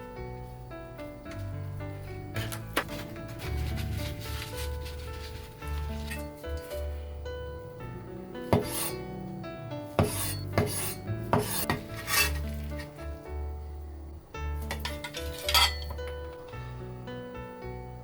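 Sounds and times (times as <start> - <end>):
background music: 0.0 - 18.0
scraping rasping strokes: 2.0 - 13.3.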